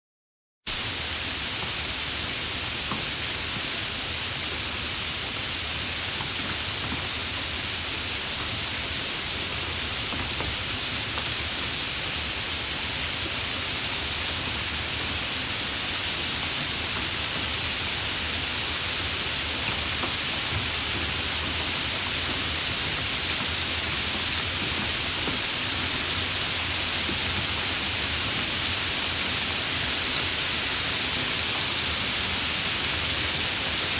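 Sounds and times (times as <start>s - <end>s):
rain hiss: 0.7s - 33.9s
faint raindrop ticks: 10.2s - 11.4s, 19.7s - 26.2s.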